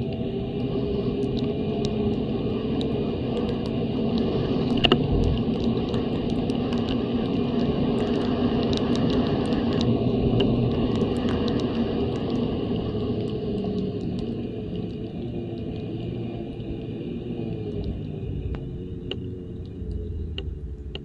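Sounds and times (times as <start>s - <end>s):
wind rushing: 4.8s - 5.9s.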